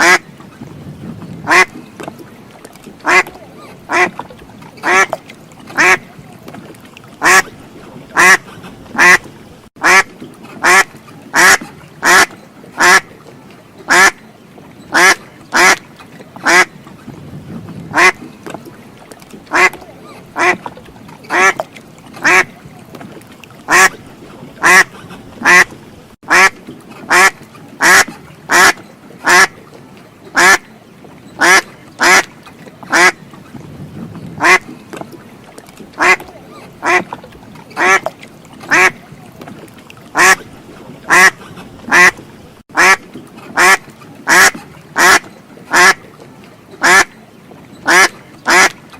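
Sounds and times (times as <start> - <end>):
duck quacking: 0.0 - 0.2, 1.5 - 1.7, 3.0 - 4.2, 4.8 - 5.2, 5.8 - 6.1, 7.2 - 7.5, 8.2 - 13.1, 13.9 - 14.2, 14.9 - 15.8, 16.4 - 16.7, 17.9 - 18.2, 19.5 - 19.8, 20.4 - 20.6, 21.3 - 21.6, 22.2 - 22.6, 23.7 - 24.0, 24.6 - 25.7, 26.3 - 26.5, 27.1 - 29.5, 30.4 - 30.6, 31.4 - 32.3, 32.9 - 33.2, 34.4 - 34.6, 36.0 - 37.0, 37.8 - 38.1, 38.7 - 39.0, 40.2 - 40.4, 41.1 - 42.2, 42.8 - 43.0, 43.6 - 46.0, 46.8 - 47.1, 47.9 - 48.8.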